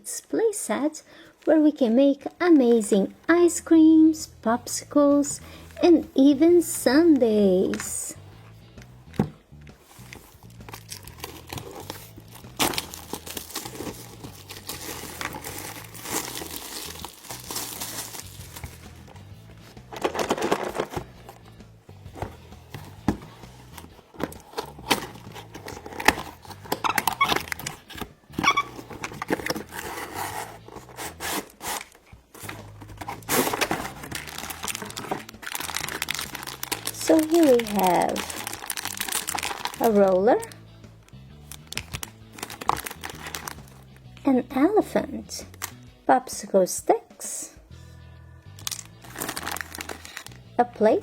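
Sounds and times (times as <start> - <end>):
quiet background music: 0.0 - 51.0
plastic and cardboard crinkling: 9.2 - 40.6, 41.4 - 44.0, 48.6 - 50.9.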